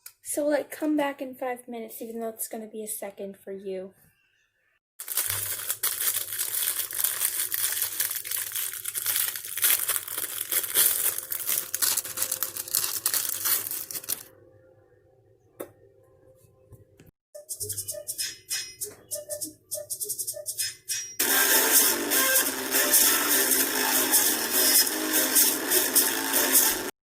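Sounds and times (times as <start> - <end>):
plastic packaging crinkling: 5.0 - 14.3.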